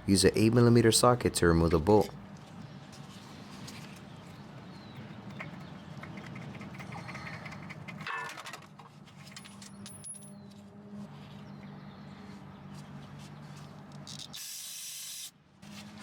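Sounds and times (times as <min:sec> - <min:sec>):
hand tools clinking on metal: 0:09.2 - 0:10.4.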